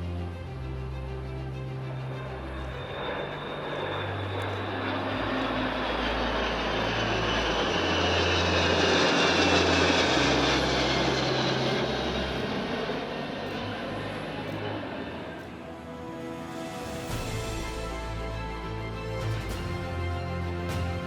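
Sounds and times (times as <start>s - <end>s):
jet aircraft passing overhead: 0.0s - 21.0s
high engine whine falling: 1.9s - 15.6s.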